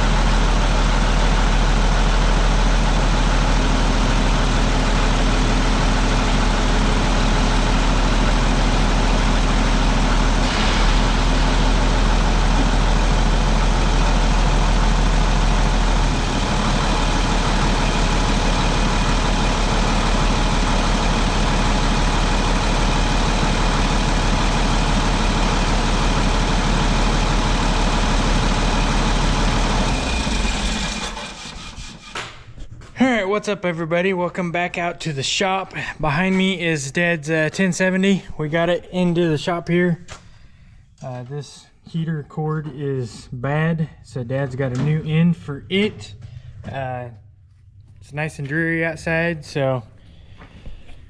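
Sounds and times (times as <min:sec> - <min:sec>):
large engine idling: 0:00.0 - 0:32.2, 0:43.9 - 0:50.8.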